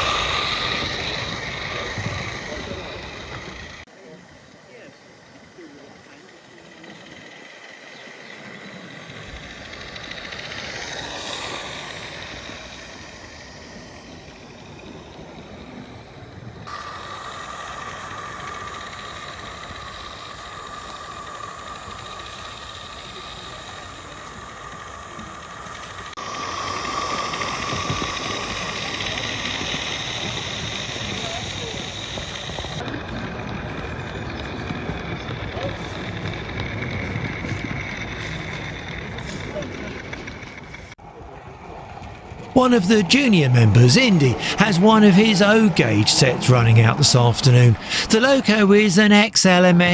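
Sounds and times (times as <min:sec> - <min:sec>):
steam hiss: 0:00.0 - 0:03.8, 0:16.7 - 0:32.8
model steam locomotive running: 0:00.0 - 0:44.9.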